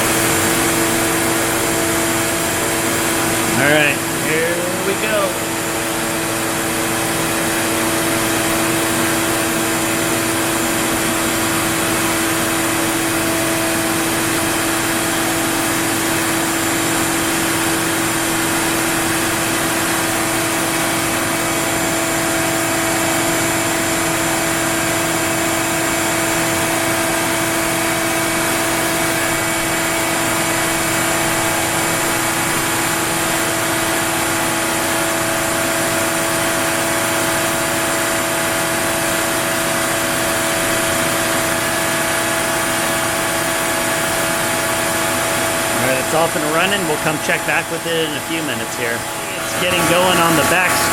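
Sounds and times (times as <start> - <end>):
router spindle whining: 0.0 - 24.2, 45.2 - 50.9.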